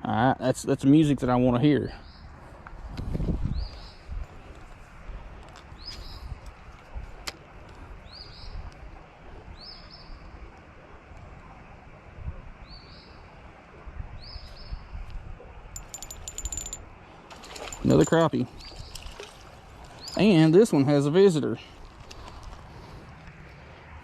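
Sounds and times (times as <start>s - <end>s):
bird chirping: 19.9s - 20.5s.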